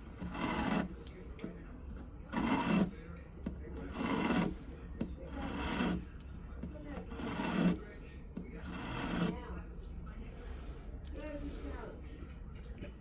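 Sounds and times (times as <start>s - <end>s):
hand file rasping on metal ring: 0.0s - 1.2s, 2.0s - 3.0s, 3.6s - 7.9s, 8.6s - 9.5s.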